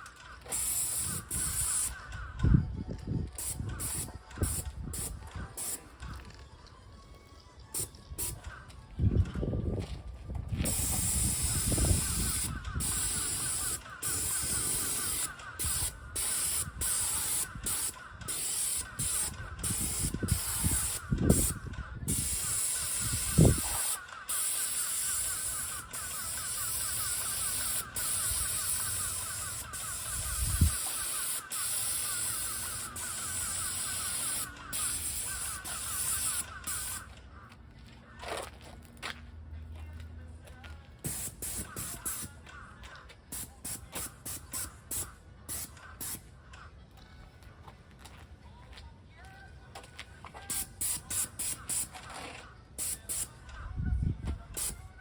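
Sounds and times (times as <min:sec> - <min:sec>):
paint sprayer hissing: 0:00.5 - 0:02.0, 0:03.4 - 0:05.9, 0:10.6 - 0:37.1, 0:41.0 - 0:42.4, 0:43.3 - 0:46.2, 0:50.5 - 0:52.0, 0:52.8 - 0:53.4.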